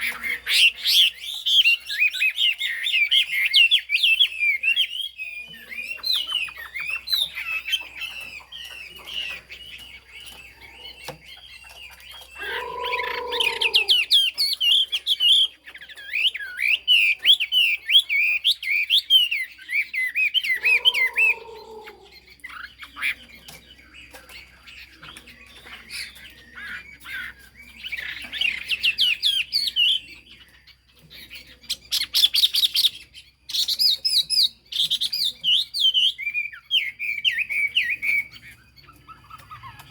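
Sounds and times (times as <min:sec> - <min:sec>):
bird warbling song: 0:00.0 - 0:39.9
low-pitched bird call: 0:12.3 - 0:14.2, 0:20.4 - 0:22.3.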